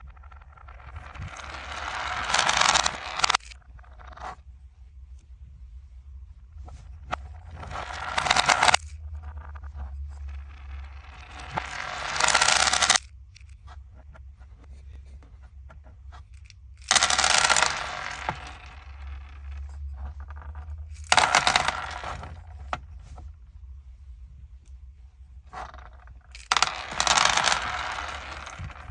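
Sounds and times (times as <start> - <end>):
beads rattling in container: 0.0 - 3.6, 7.6 - 9.6, 10.2 - 13.0, 16.4 - 22.7, 25.6 - 28.9.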